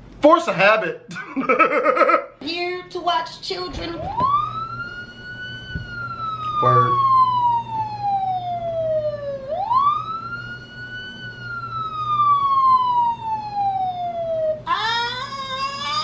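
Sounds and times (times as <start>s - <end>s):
police siren wailing: 3.7s - 16.0s.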